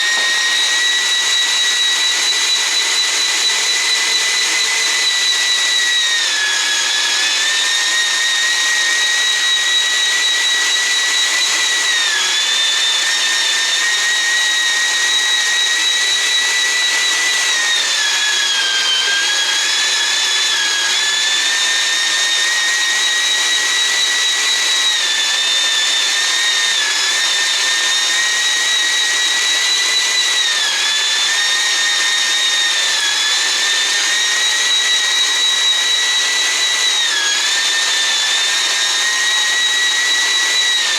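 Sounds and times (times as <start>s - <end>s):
electric meat grinder whine: 0.0s - 40.9s.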